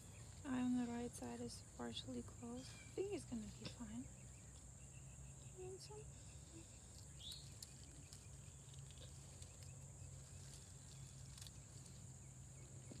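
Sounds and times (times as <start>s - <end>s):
high insect drone: 0.0s - 13.0s
faint ticks: 5.4s - 12.2s.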